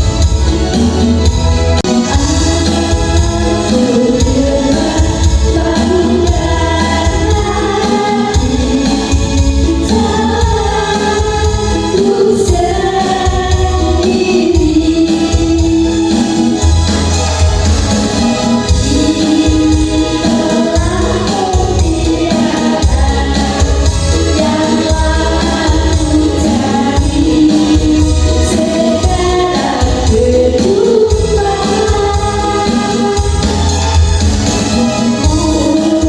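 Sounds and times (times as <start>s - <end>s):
heavy pulsing bass: 0.0s - 14.0s
light percussion: 0.0s - 36.0s
singing: 18.1s - 36.0s.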